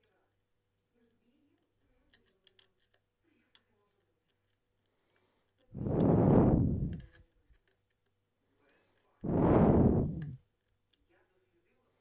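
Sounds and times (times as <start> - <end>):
air blowing over microphone: 5.7 - 7.1, 9.2 - 10.4.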